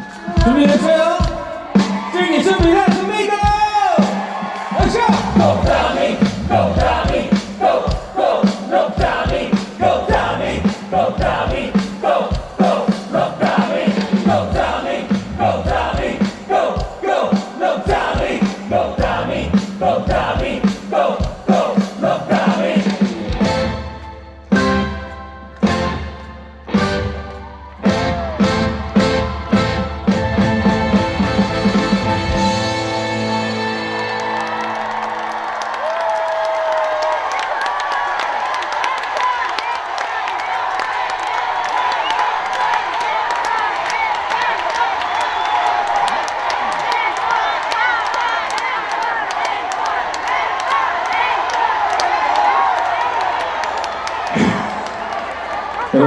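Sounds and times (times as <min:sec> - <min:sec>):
crowd shouting in rhythm: 0:00.0 - 0:23.7, 0:31.6 - 0:56.0
live trot band music: 0:17.9 - 0:35.4
instrumental beat with held notes: 0:23.2 - 0:33.3.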